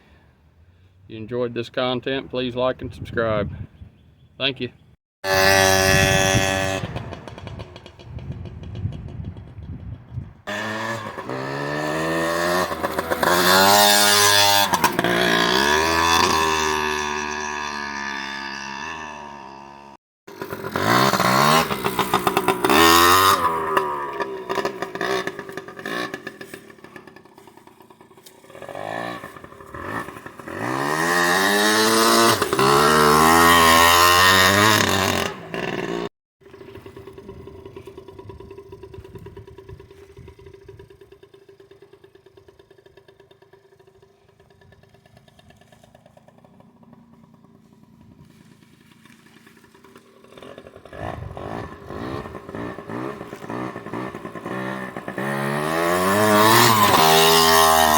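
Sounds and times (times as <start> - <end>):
dirt bike engine accelerating: 5.2 - 57.9
faint steady engine: 36.4 - 57.9.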